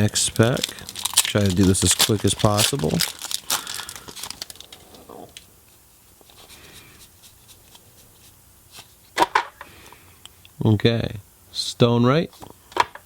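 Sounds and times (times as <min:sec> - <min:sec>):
foil wrapper rustling: 0:00.0 - 0:05.5.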